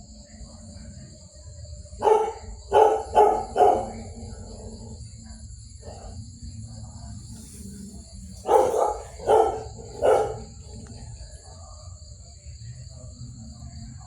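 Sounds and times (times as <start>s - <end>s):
puppy barking: 2.0s - 4.2s, 8.4s - 10.8s.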